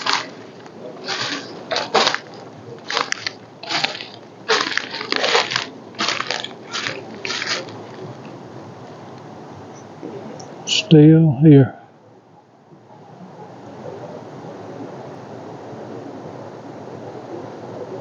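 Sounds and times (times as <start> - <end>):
footsteps crunching on woodland floor: 0.0 - 9.1.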